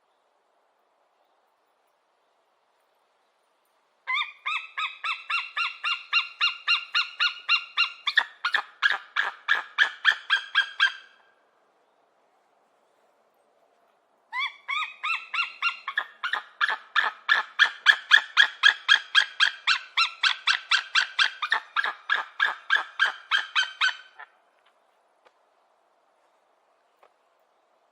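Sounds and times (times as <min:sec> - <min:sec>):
eagle calling: 0:04.1 - 0:11.2, 0:14.3 - 0:24.3.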